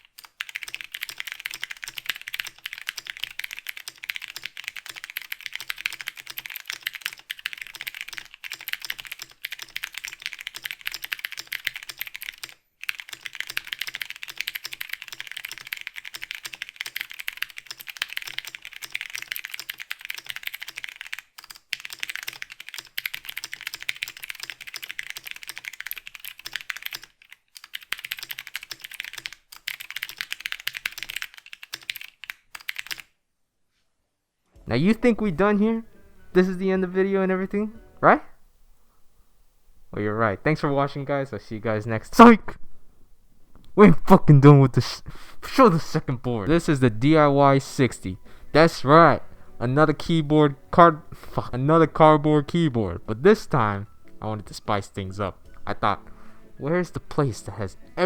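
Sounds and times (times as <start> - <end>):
mechanical keyboard typing: 0.0 - 33.1.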